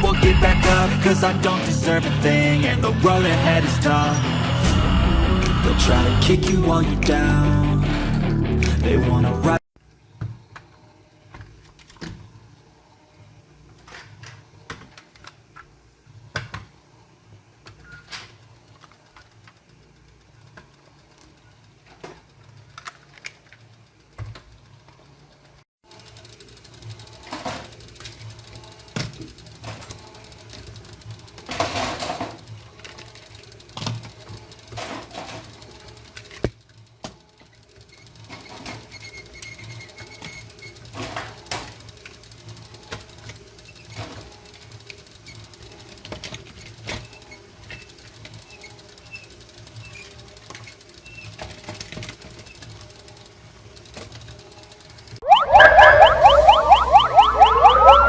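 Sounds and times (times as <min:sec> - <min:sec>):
toy cars clicking and tapping: 0:17.7 - 0:55.2.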